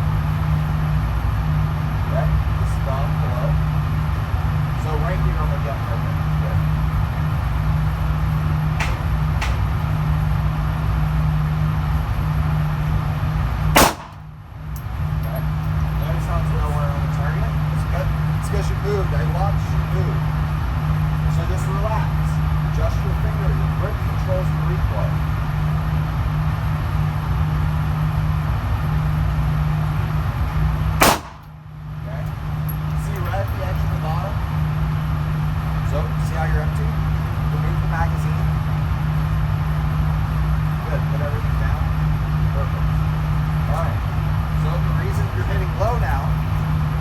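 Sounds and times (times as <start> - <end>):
steady low hum: 0.0 - 47.0
loud pistol shot: 13.8 - 14.3, 31.0 - 31.6.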